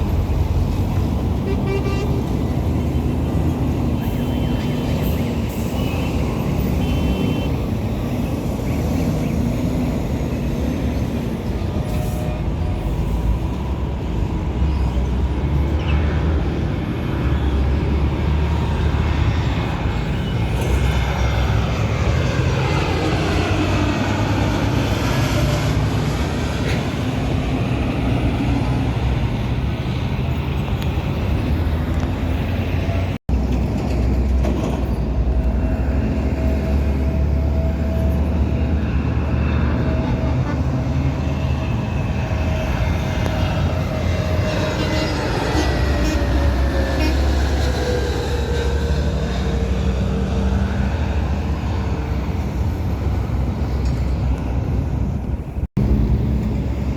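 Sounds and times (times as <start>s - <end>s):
jet airliner deep rumble: 18.2s - 56.9s.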